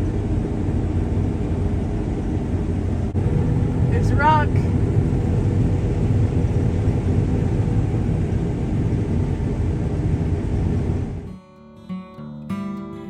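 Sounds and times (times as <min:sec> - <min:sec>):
combine harvester rumble: 0:00.0 - 0:11.3.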